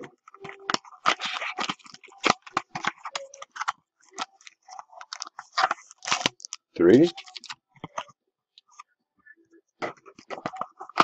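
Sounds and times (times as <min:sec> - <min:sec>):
packaging crinkling and rustling: 0:00.0 - 0:08.0.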